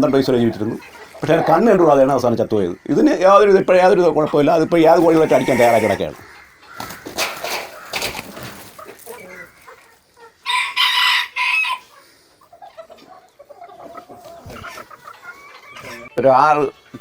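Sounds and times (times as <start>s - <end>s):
chickens clucking: 0.0s - 17.0s
rooster crowing: 5.0s - 6.2s, 10.4s - 11.9s.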